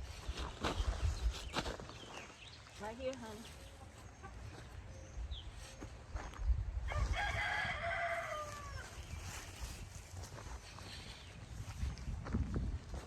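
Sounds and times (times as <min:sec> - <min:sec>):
rooster crowing: 0:06.9 - 0:09.0.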